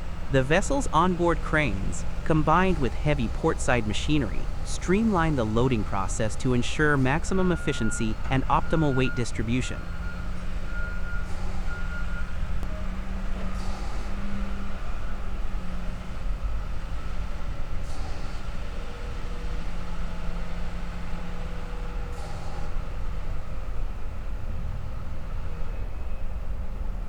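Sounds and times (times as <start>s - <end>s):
diesel machinery engine drone: 0.0s - 27.0s
beeping: 0.2s - 12.7s.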